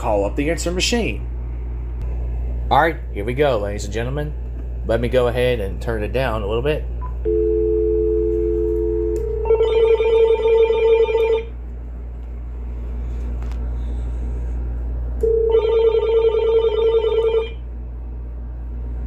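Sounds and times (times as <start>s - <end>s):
telephone dial tone: 7.3s - 11.5s, 15.2s - 17.6s
warbling electronic phone ring: 7.3s - 11.5s, 15.3s - 17.6s.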